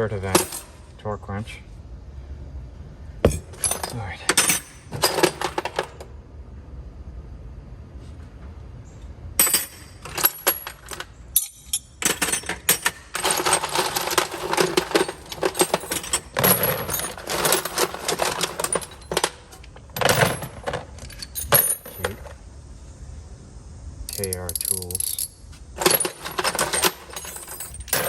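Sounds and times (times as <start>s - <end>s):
steel tools clattering: 0.2s - 0.8s, 3.3s - 6.0s, 9.4s - 22.3s, 24.1s - 28.0s.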